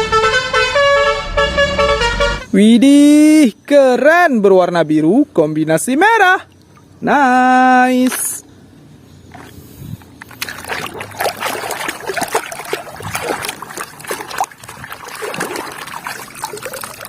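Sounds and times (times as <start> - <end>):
water sloshing and splashing: 6.4 - 7.1, 9.3 - 17.0.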